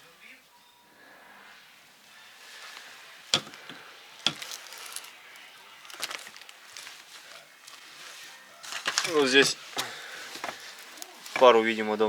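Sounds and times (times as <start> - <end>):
metal parts knocking together: 3.4 - 5.1, 8.8 - 11.6.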